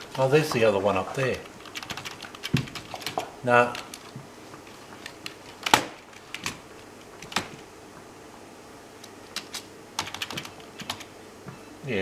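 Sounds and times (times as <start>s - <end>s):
computer keyboard key presses: 1.6s - 4.1s, 7.2s - 7.6s, 9.3s - 11.1s.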